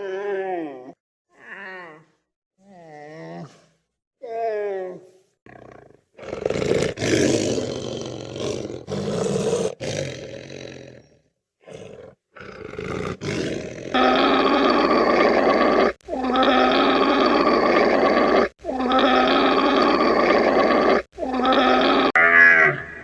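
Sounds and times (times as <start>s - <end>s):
lion roaring: 5.5s - 23.0s
animal's long pitched call: 14.0s - 23.0s.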